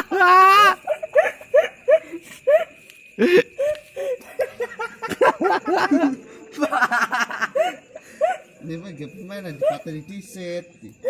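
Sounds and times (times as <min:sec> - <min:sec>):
people laughing: 0:00.0 - 0:08.6, 0:09.4 - 0:10.0.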